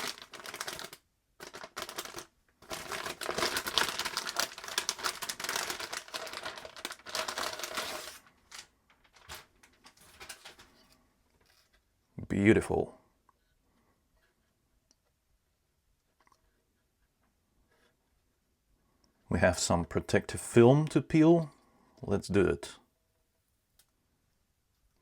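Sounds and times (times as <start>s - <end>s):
cardboard packaging rustling: 0.0s - 11.7s.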